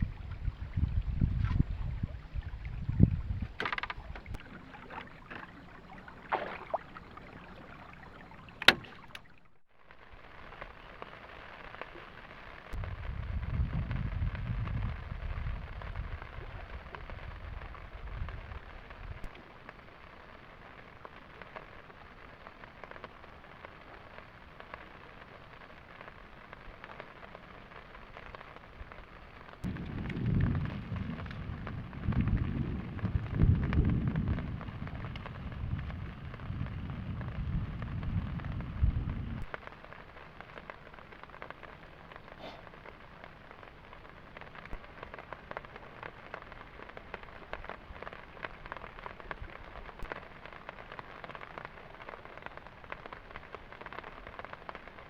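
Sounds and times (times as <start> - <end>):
heavy rain hissing: 4.3 - 9.2
deep low rumble: 29.7 - 39.5.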